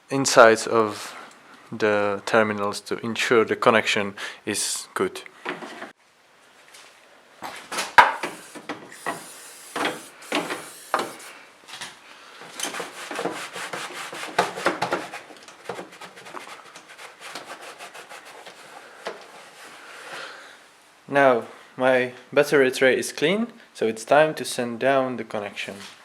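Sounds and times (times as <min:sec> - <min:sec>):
scrubbing and scraping strokes: 0:08.2 - 0:11.3, 0:12.5 - 0:19.9.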